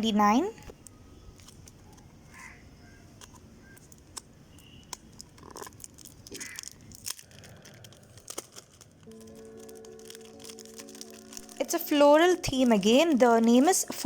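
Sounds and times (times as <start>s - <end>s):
paper rustling: 3.2s - 14.0s.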